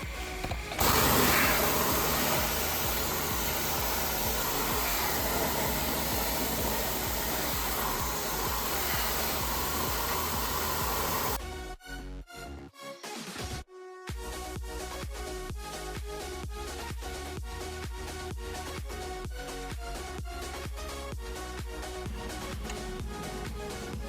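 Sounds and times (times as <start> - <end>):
background music: 0.0 - 24.0
loud rushing hiss: 0.4 - 11.4.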